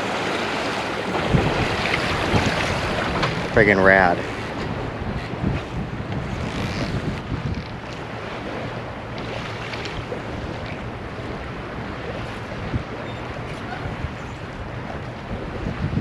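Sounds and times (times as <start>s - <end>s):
water rushing past a hull: 0.0s - 16.0s
wind on the microphone: 0.0s - 16.0s.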